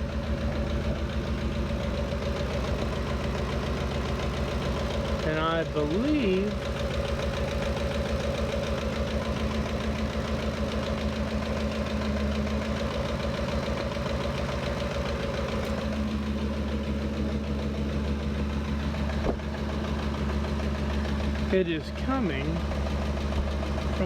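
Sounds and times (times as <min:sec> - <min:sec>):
engine idling: 0:00.0 - 0:24.0.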